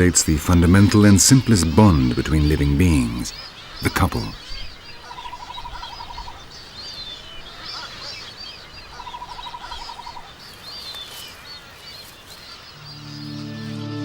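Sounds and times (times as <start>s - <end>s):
rapid trilled bird call: 0.0s - 13.8s
birds chirping: 0.0s - 14.0s
soft music: 12.8s - 14.0s.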